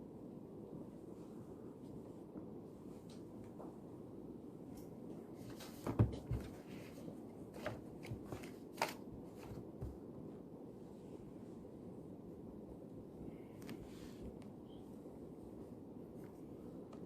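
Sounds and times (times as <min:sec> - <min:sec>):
low room hum: 0:00.0 - 0:17.0
objects handled on a desk: 0:05.4 - 0:10.1.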